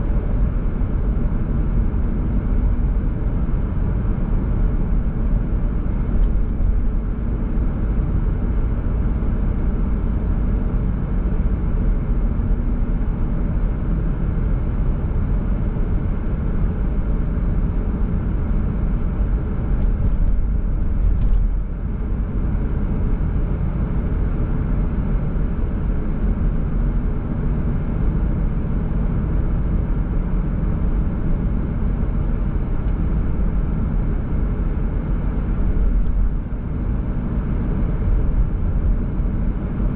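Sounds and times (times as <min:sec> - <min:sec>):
car tyre and engine rumble: 0:00.0 - 0:39.9.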